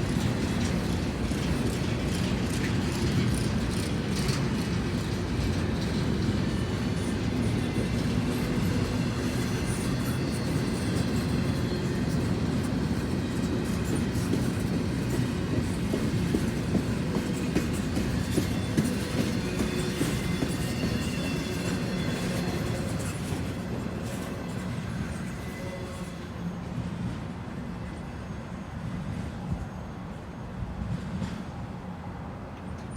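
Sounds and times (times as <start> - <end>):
freight train rumbling past: 0.0 - 32.9
wheels clicking over rail joints: 11.2 - 25.3
faint wheel squeal: 17.3 - 26.8.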